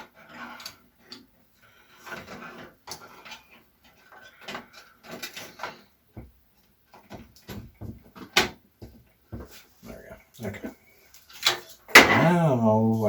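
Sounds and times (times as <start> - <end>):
clicks and knocks of parts handled: 2.1 - 5.9.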